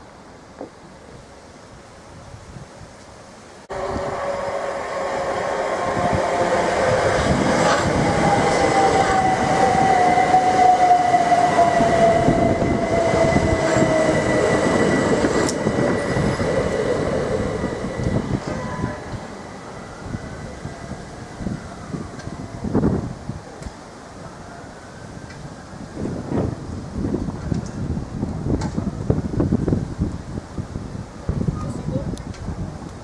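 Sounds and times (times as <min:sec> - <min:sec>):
electric train passing: 0:03.6 - 0:31.4
train whine falling in pitch: 0:03.7 - 0:23.1.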